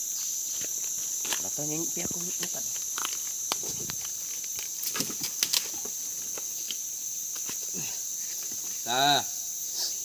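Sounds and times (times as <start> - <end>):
leaves rustling: 0.0 - 9.0
insects buzzing: 0.0 - 10.0
twigs snapping: 0.6 - 7.6.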